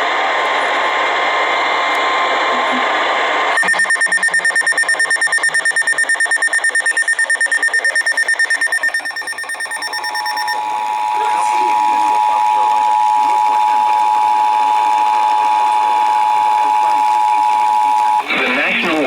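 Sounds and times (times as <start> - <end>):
steady alert tone: 3.6 - 10.6
rapidly pulsing electronic alarm: 3.6 - 11.7.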